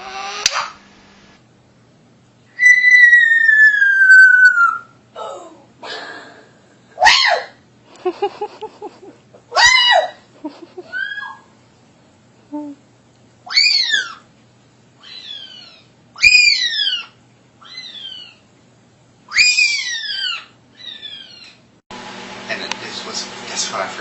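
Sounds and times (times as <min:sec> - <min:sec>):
parrot whistling and squawking: 0:02.6 - 0:05.0, 0:10.9 - 0:11.5, 0:13.5 - 0:14.2, 0:19.3 - 0:21.5.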